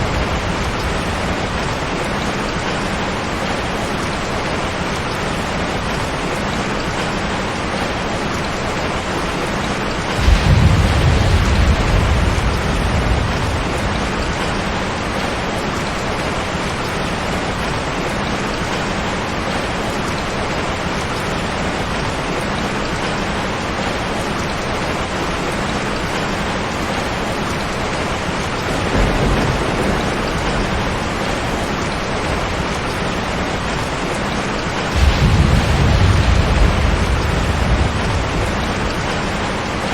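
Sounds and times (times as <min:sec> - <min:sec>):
low thunder rumble: 0:00.0 - 0:03.4, 0:10.0 - 0:17.0, 0:28.5 - 0:39.9
heavy rain on a tin roof: 0:00.0 - 0:39.9.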